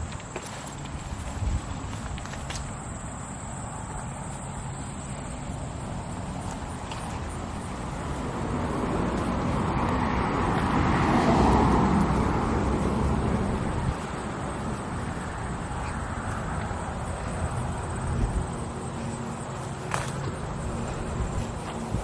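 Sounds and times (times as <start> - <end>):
car driving past: 7.8 - 21.0.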